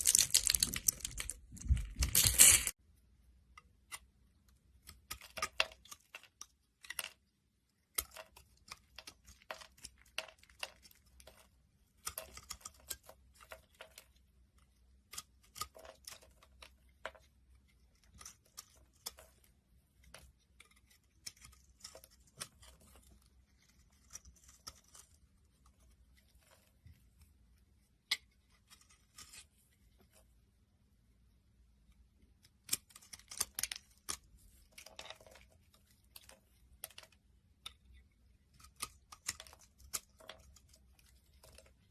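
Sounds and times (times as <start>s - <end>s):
blade cutting soap: 3.5s - 29.5s, 32.0s - 41.9s.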